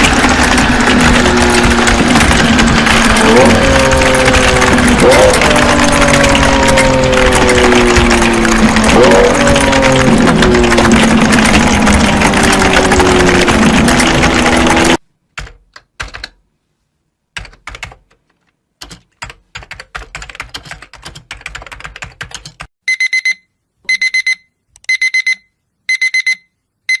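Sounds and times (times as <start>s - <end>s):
loud noise: 0.0s - 15.0s
keyboard typing: 0.0s - 16.4s, 17.4s - 22.7s
digital alarm beeping: 22.9s - 27.0s.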